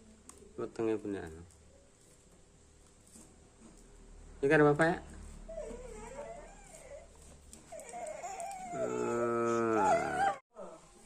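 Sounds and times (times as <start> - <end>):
little boy crying and whimpering: 7.7 - 10.4.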